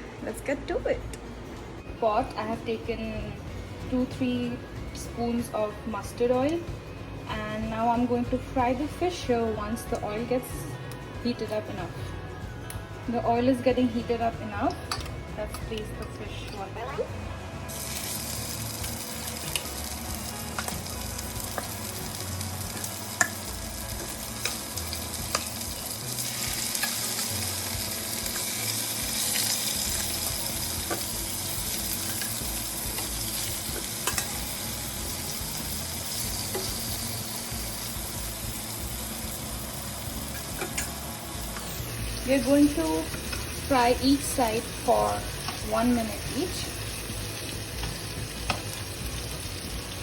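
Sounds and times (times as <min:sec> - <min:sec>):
fish sizzling in oil: 0:17.6 - 0:50.0
oil popping and crackling: 0:17.7 - 0:37.1, 0:46.4 - 0:50.0.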